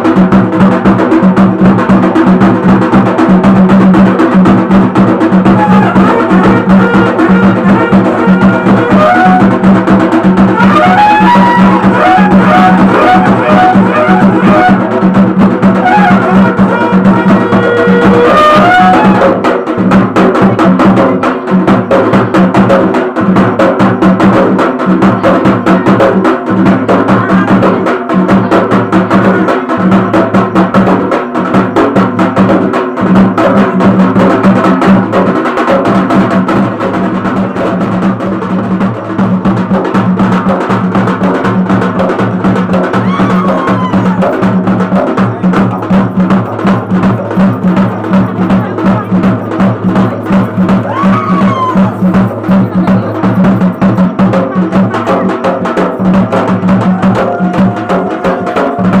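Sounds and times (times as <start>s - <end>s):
fast drumming: 0.0s - 59.0s
wind instrument held tone: 5.4s - 9.6s, 10.5s - 15.0s, 15.7s - 19.5s, 48.9s - 54.1s.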